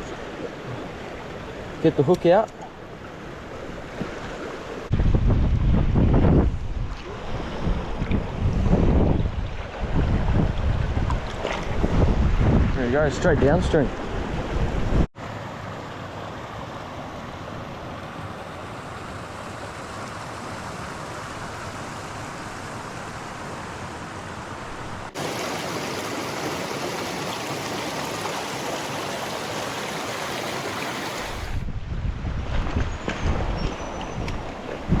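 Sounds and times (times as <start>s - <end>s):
wind buffeting microphone: 4.9s - 15.1s, 31.0s - 35.0s
river water rushing over rocks: 25.1s - 31.6s.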